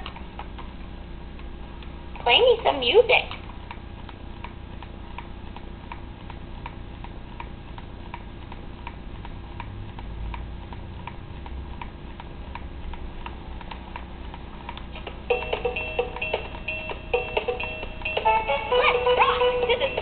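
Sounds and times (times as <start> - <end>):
steady ticking: 3.6 - 20.0
electronic toy music: 15.3 - 20.0.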